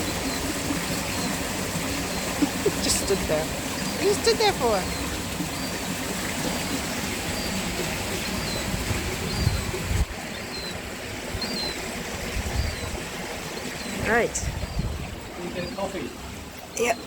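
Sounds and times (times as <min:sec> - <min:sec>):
running water rushing: 0:00.0 - 0:17.0.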